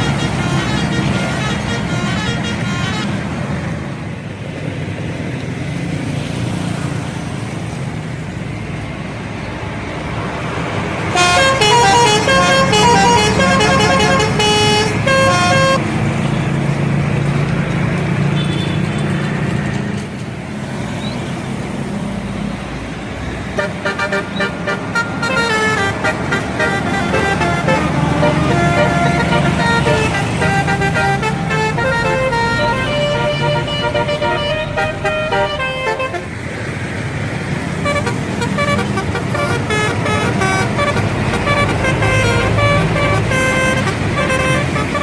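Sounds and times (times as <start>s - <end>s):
musical air horn tune: 0.0s - 3.2s, 11.1s - 15.8s, 23.6s - 36.4s, 37.8s - 45.0s
bus engine running: 0.0s - 45.0s.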